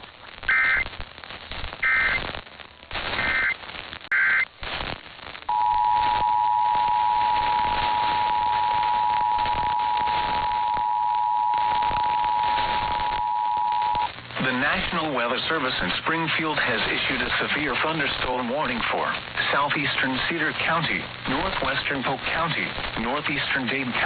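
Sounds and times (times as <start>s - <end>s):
radio static: 0.0s - 24.0s
buzzy digital data squawks: 0.4s - 0.9s, 1.8s - 2.3s, 3.0s - 4.5s, 5.5s - 14.1s
two-tone attention signal: 5.5s - 14.1s.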